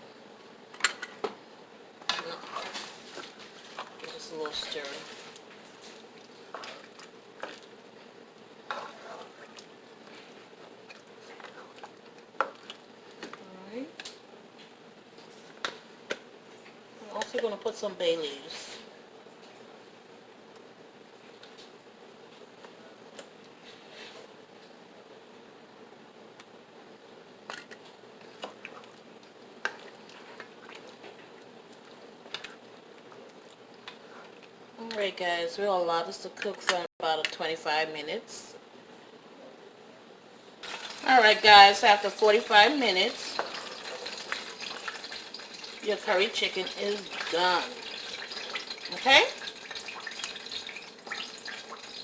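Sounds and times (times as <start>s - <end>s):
faint steady hum: 0.0s - 52.0s
spoon stirring curry in a pot: 8.6s - 9.6s.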